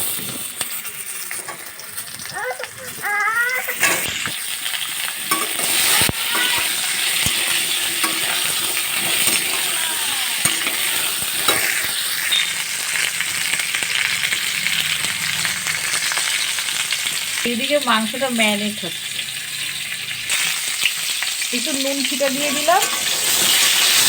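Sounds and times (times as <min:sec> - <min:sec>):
potatoes sizzling in oil: 0:00.0 - 0:24.0
spatula knocking against pan: 0:10.4 - 0:11.8.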